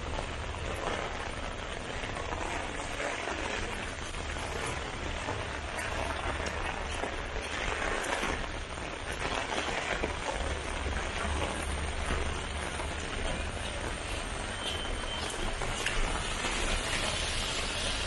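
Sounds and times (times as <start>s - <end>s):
rain falling: 0.0s - 18.0s.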